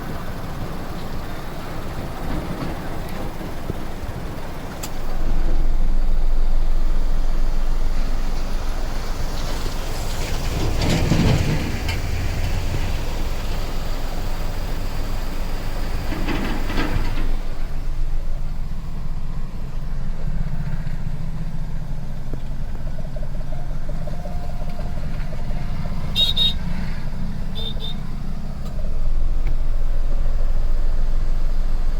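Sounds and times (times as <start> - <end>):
vehicle engine idling: 0.0 - 31.9
rushing floodwater: 6.9 - 17.9.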